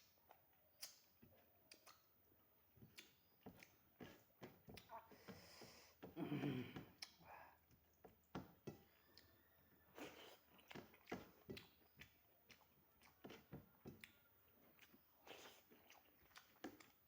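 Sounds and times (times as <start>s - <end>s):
chewing food: 0.0s - 2.1s, 2.7s - 5.4s, 6.0s - 17.0s
wet mouth clicks: 1.7s - 2.1s, 7.0s - 7.2s.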